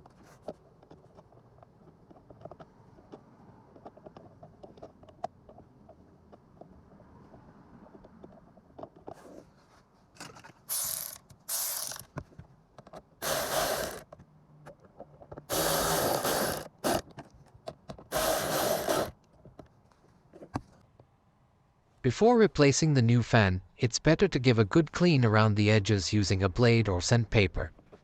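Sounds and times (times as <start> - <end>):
hand tool rasping: 13.2 - 14.0, 15.5 - 17.1, 18.1 - 19.1.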